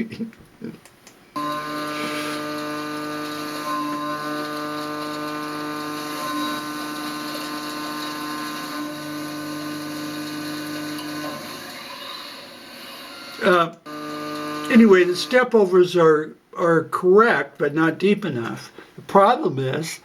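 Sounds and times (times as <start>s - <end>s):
milling machine cutting whine: 1.4s - 15.6s.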